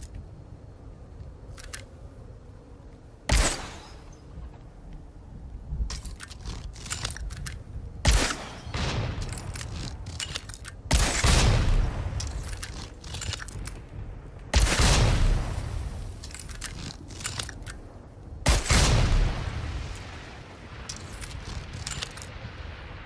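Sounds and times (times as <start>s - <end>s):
crossbow blasts with rumble: 3.2s - 4.6s.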